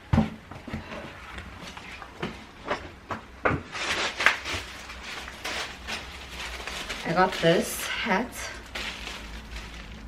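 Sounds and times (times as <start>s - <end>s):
packaging crinkling and rustling: 3.6s - 10.0s.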